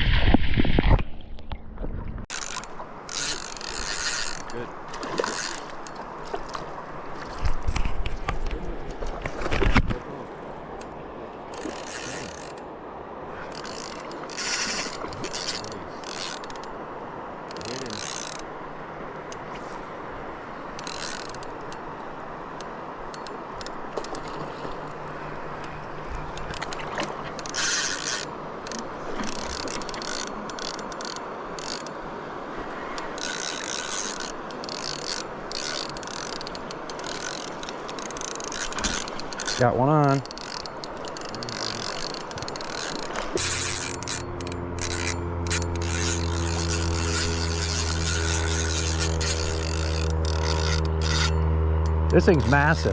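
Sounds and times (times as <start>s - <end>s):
fishing reel cranking: 2.3s - 6.6s, 11.5s - 12.6s, 13.5s - 16.7s, 17.5s - 18.5s, 20.8s - 21.8s, 26.3s - 32.0s, 33.0s - 52.9s.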